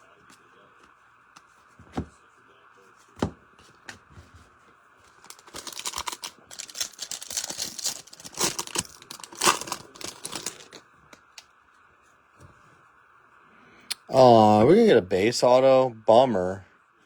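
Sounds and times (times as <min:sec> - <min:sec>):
foil wrapper crinkling and tearing: 0:05.2 - 0:11.4.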